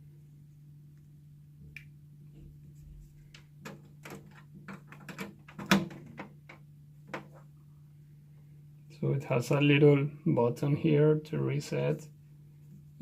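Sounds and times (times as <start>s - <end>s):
steady low hum: 6.0s - 13.0s.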